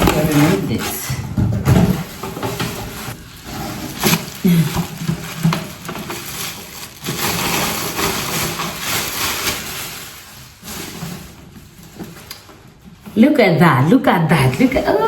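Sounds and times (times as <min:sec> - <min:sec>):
packaging rustling and crackling: 0:01.9 - 0:12.8.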